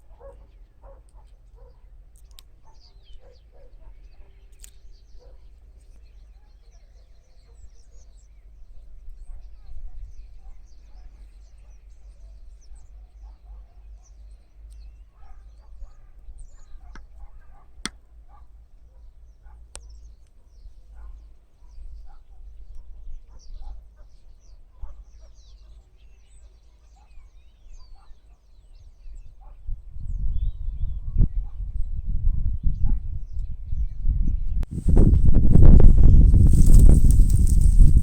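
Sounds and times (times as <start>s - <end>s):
birds chirping: 34.7s - 38.0s.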